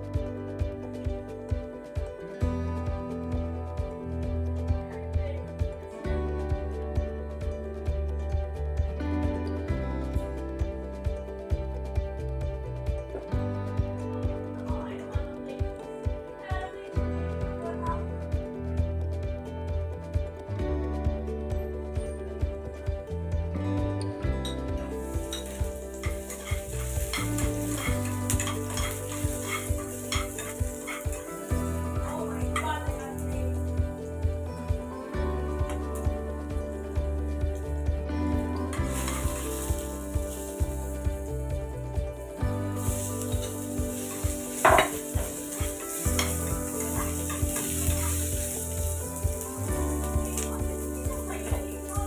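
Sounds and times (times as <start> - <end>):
background music: 0.0 - 52.0
food sizzling: 22.8 - 52.0
utensil clanking: 24.2 - 52.0
spoon stirring and knocking in pan: 24.4 - 33.6, 38.7 - 41.2, 42.6 - 52.0
utensil scraping a pan: 25.2 - 33.3.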